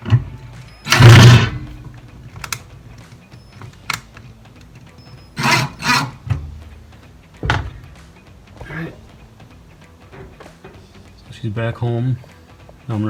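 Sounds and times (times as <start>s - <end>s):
scraping of motor in mount: 0.0s - 2.7s, 5.1s - 6.7s
sharp clicks: 0.9s - 4.7s.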